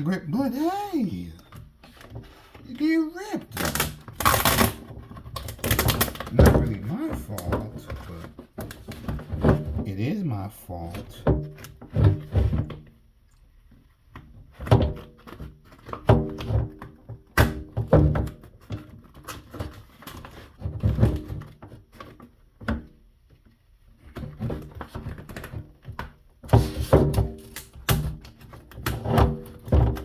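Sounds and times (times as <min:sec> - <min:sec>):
griptape ripping: 0:03.4 - 0:04.8.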